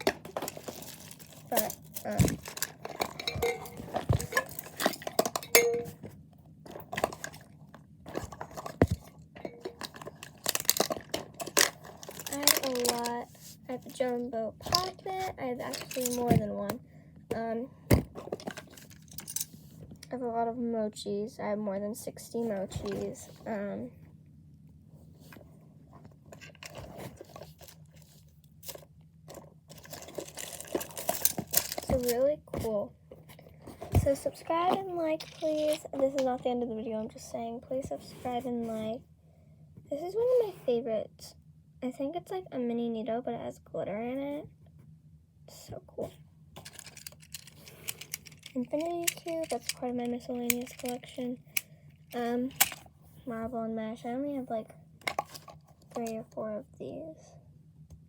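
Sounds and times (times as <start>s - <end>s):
plastic crinkling and rustling: 0.0s - 5.5s, 6.8s - 14.1s, 26.4s - 32.2s, 46.6s - 51.4s
small toys clattering: 0.0s - 7.5s, 8.1s - 16.5s, 18.1s - 19.6s, 26.3s - 32.3s, 34.0s - 36.4s, 46.6s - 52.9s, 55.0s - 56.2s.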